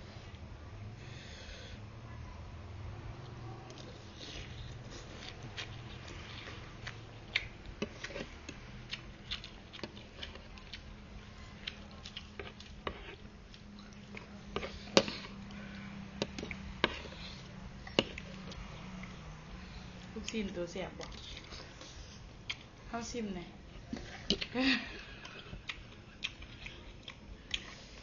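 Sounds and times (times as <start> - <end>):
person chewing noodle soup: 3.2 - 20.1, 21.0 - 22.8, 23.8 - 28.0.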